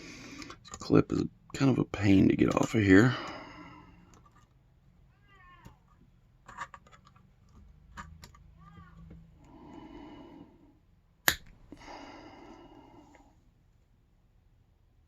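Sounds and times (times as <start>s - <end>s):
metal clip snapping: 11.3s - 11.8s.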